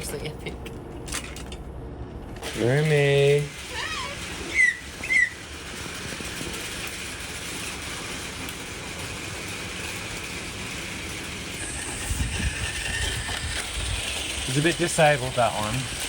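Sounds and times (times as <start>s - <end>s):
toy train motors whirring: 2.4s - 16.0s.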